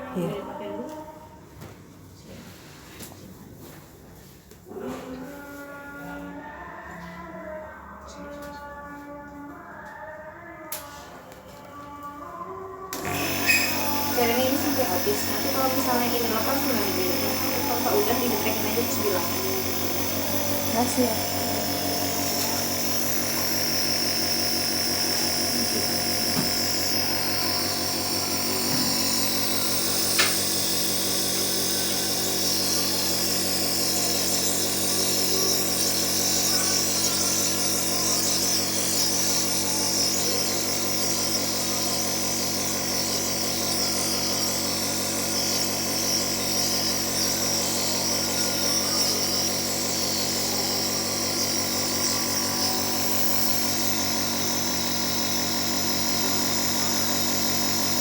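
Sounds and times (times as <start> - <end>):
nebulizer motor hum with hiss: 13.0 - 58.0.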